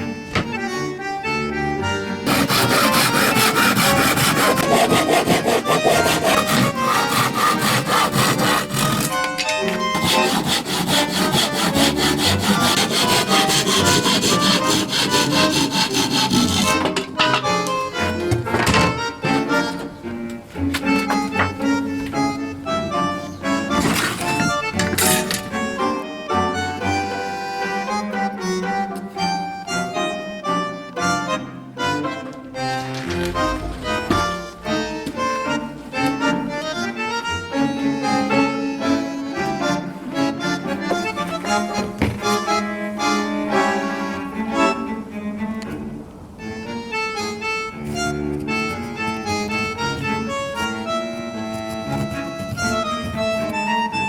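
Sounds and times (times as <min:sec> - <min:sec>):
accordion-like melody: 0:00.0 - 0:54.0.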